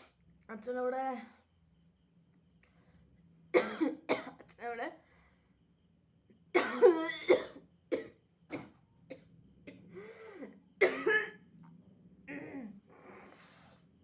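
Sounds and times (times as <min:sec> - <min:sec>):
person coughing: 0:03.6 - 0:04.4, 0:06.6 - 0:11.4.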